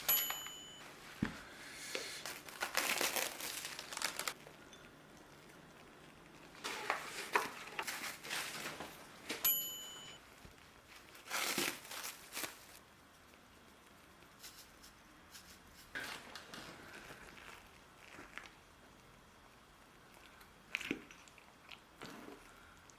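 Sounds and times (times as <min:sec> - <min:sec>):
rustling and crinkling: 0:00.8 - 0:09.4, 0:10.3 - 0:19.1.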